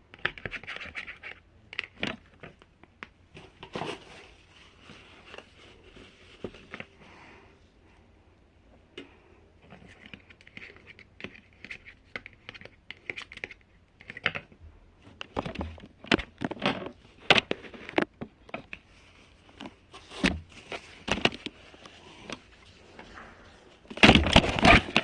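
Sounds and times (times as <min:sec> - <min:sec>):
crinkling handling noises: 0:00.1 - 0:08.0, 0:08.6 - 0:25.0
scraping: 0:19.9 - 0:25.0.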